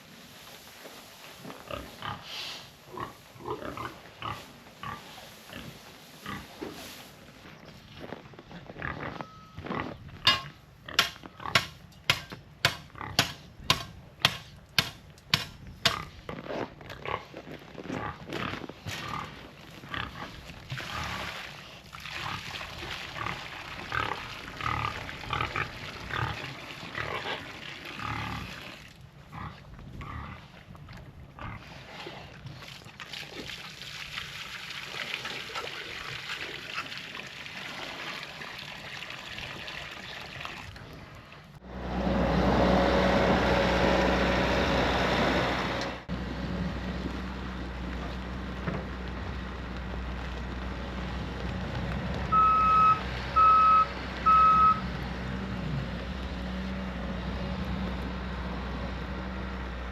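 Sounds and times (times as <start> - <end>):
sharp evenly spaced knocks: 10.3 - 16.0
pigs grunting: 23.1 - 28.7, 29.3 - 30.6, 31.4 - 32.2.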